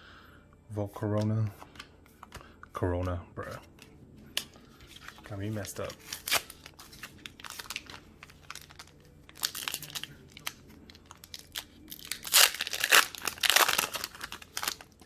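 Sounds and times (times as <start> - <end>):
foil wrapper crinkling and tearing: 5.0 - 15.0.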